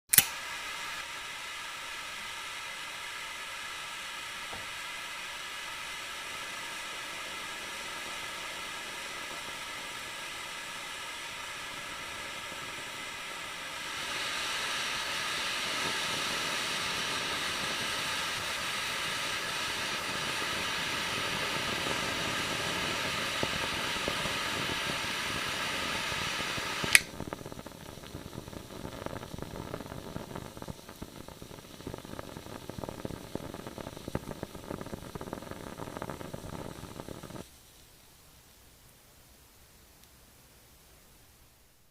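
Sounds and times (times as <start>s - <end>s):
flame hissing: 0.0s - 38.6s
sharp click: 0.1s - 0.4s, 26.9s - 27.1s
burning crackling: 0.1s - 40.2s.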